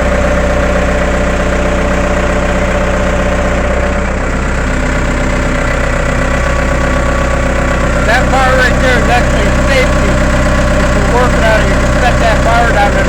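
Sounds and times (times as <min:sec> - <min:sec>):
skid steer engine idling: 0:00.0 - 0:13.0
constant whine: 0:05.0 - 0:13.0.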